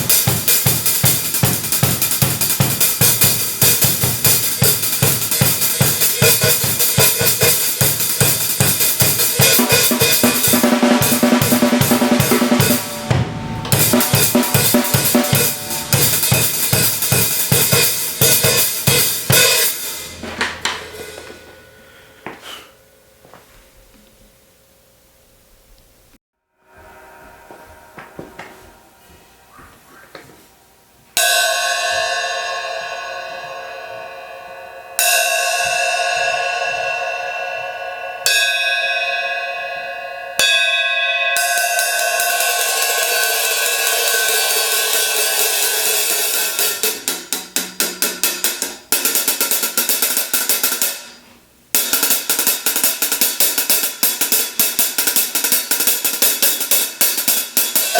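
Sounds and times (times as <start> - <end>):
drum kit groove: 0.0 - 22.6
open hi-hats ringing: 0.0 - 23.2, 26.8 - 57.9.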